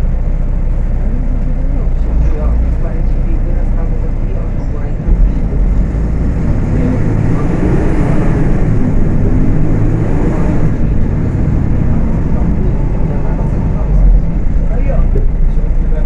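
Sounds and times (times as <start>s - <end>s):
bus diesel engine rumbling: 0.0s - 16.0s.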